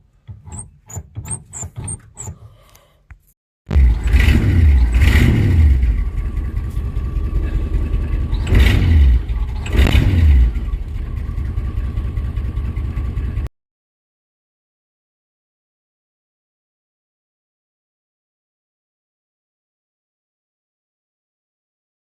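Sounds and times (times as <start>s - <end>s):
car engine idling and revving: 3.7s - 13.5s.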